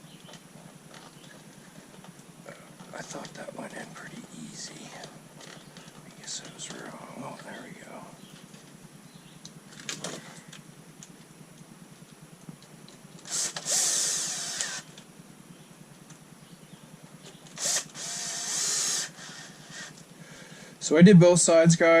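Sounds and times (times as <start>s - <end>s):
small electric motor spinning up: 13.2s - 15.0s, 17.5s - 20.0s.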